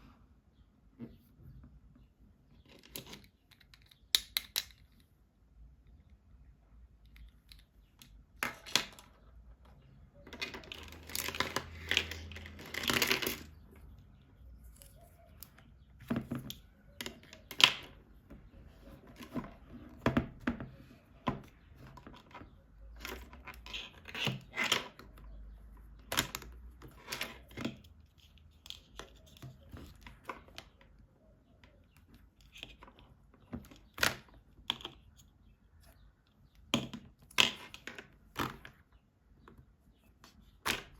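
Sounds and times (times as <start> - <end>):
clicks of small plastic pieces: 2.7 - 5.1.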